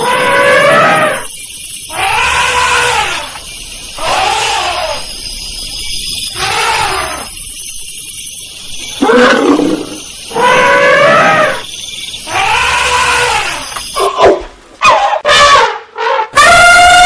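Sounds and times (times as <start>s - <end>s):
elephant calling: 0.0s - 1.3s, 1.9s - 3.4s, 4.0s - 5.1s, 6.3s - 7.4s, 8.8s - 14.3s.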